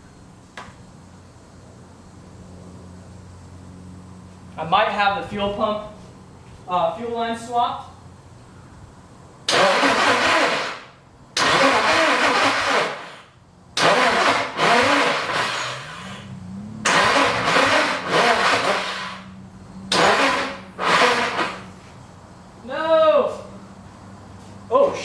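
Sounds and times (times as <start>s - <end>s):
car engine cranking by starter: 9.4s - 21.9s.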